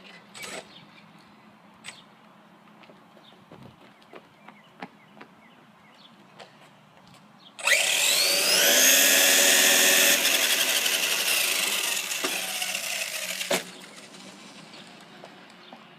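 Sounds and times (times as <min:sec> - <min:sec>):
electric motor whine: 0:07.6 - 0:13.7.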